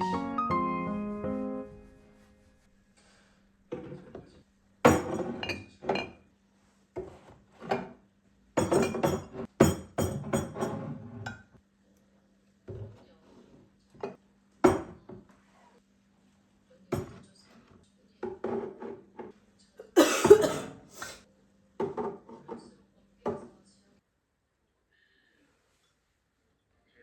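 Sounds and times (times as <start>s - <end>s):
glassware and dishes clinking: 4.9s - 6.2s, 8.6s - 11.5s.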